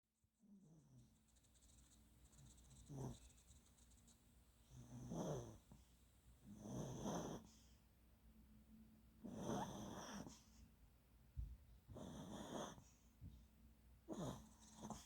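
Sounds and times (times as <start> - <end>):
puppy snoring: 0.5 - 1.2, 1.8 - 3.6, 4.7 - 5.8, 6.4 - 7.7, 9.2 - 10.6, 11.9 - 13.0, 14.1 - 15.0.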